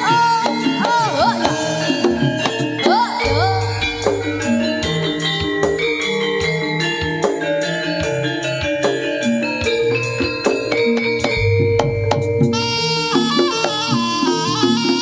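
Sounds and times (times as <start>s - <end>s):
ringing melodic notes: 1.6s - 15.0s
drum strokes: 3.2s - 7.4s, 11.2s - 14.4s.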